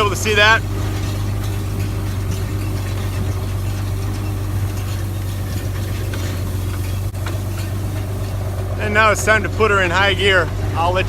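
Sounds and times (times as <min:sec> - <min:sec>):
tractor engine droning: 0:00.0 - 0:11.0.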